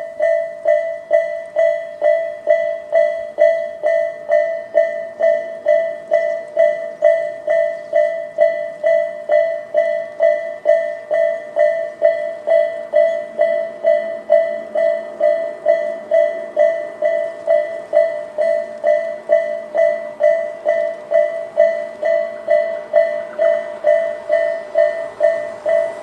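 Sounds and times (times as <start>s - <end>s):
level crossing electronic bell: 0.0s - 26.0s.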